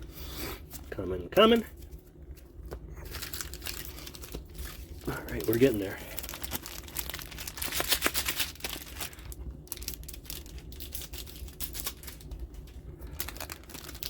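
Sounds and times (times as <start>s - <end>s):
wrapper crinkling: 3.0s - 14.0s.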